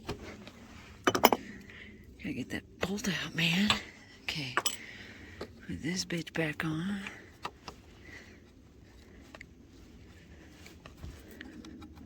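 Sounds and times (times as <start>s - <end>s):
faint clicks and knocks of tools: 7.0s - 9.6s, 10.4s - 12.0s.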